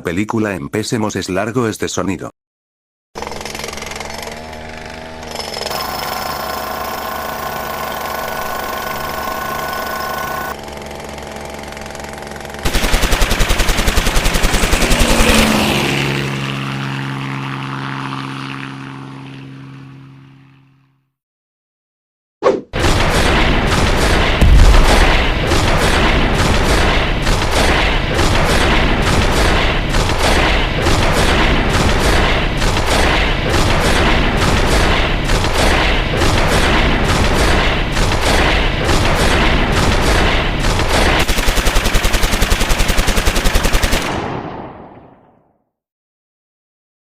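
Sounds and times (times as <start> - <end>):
machine-gun burst: 5.7 - 10.6, 12.6 - 15.7, 22.8 - 45.0
dense gunfire volleys: 12.6 - 15.6, 22.8 - 45.3
heavy boom: 24.4 - 29.1.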